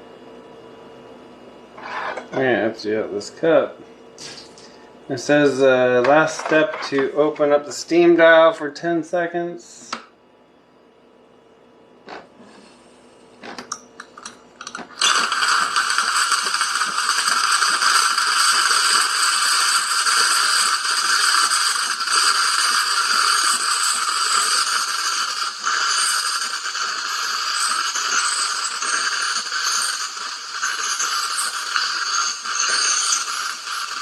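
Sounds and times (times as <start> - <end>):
steam wand hissing: 15.0 - 34.0.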